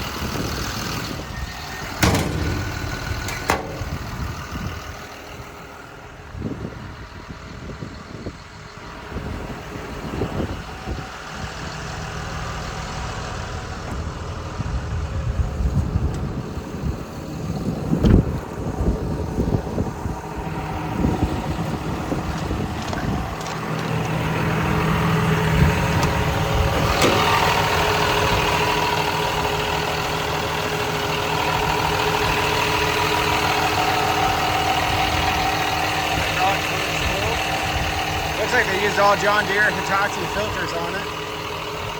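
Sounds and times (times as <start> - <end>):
excavator diesel engine idling: 0.0 - 41.9
knocks and clunks: 1.7 - 5.4, 25.8 - 27.8.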